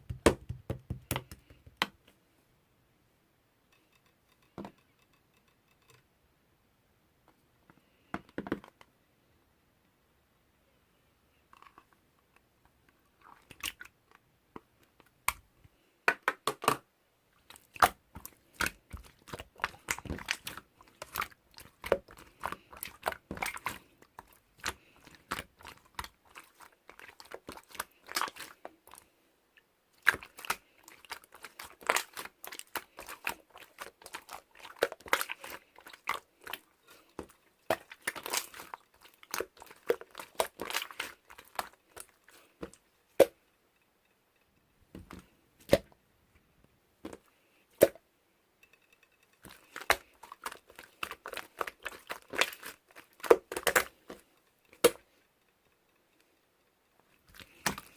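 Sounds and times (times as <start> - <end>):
crunching and crackling: 17.4 - 29.1, 30.0 - 42.8, 49.3 - 55.2.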